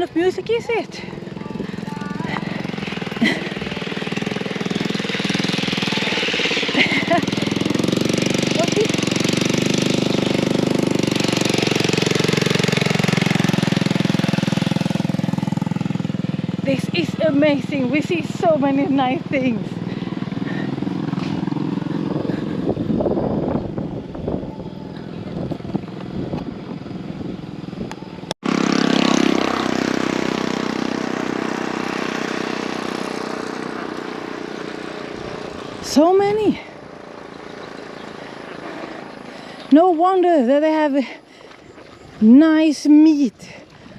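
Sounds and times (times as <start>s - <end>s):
small engine chugging: 0.0s - 43.9s.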